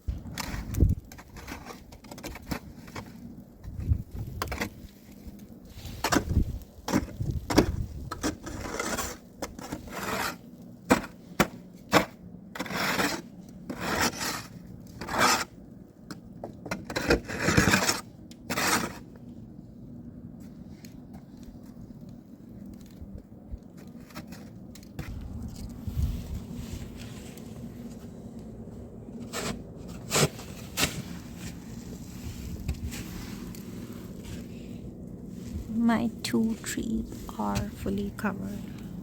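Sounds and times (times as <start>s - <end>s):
snow shovel scraping snow: 0.4s - 3.2s, 5.6s - 15.6s, 16.9s - 19.1s, 29.2s - 35.8s.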